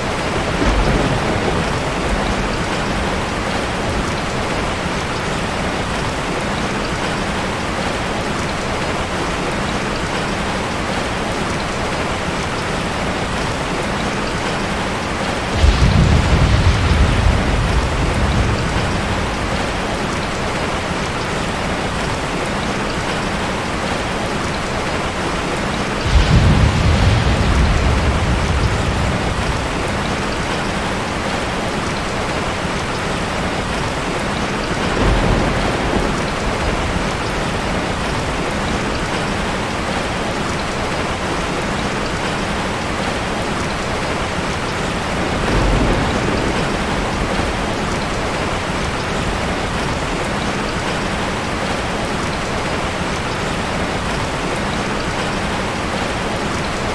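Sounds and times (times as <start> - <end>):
thunder rumbling: 0.0 - 6.0, 13.2 - 41.3, 44.4 - 51.8
heavy rain: 0.0 - 56.9.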